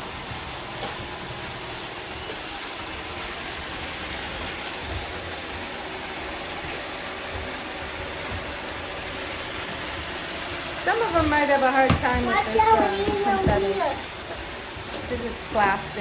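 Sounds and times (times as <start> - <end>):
robot vacuums whirring: 10.8 - 16.0.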